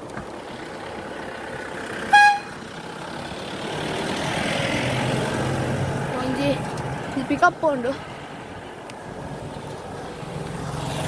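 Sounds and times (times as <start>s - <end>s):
approaching vehicle: 0.0s - 11.0s
vehicle horn toot: 2.1s - 2.6s.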